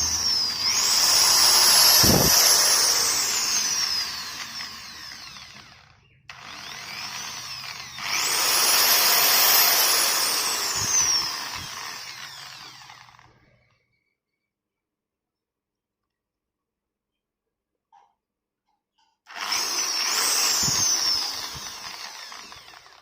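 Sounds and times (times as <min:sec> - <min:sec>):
electric drill motor whine: 0:00.0 - 0:13.7, 0:19.3 - 0:23.0.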